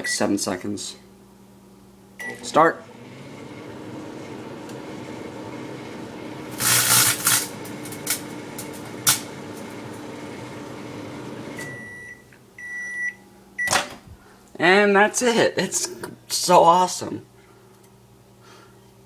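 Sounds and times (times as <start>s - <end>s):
microwave beeps: 0.0s - 0.3s, 2.2s - 2.5s, 8.3s - 13.8s
microwave oven humming: 0.0s - 14.6s
chip bag crackling: 6.5s - 9.2s.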